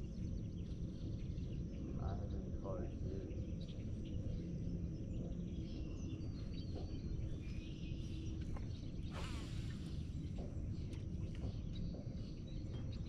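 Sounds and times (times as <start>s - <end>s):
faint bird chirps: 0.1s - 13.0s
brief noisy burst: 9.1s - 9.9s.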